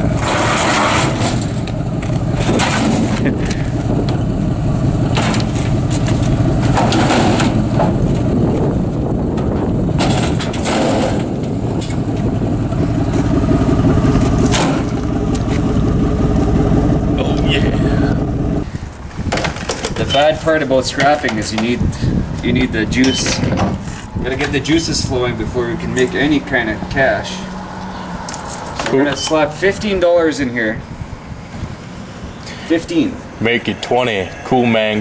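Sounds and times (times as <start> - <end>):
rattles and clunks: 0.0 - 29.6
pickup engine and road rumble: 0.0 - 35.0.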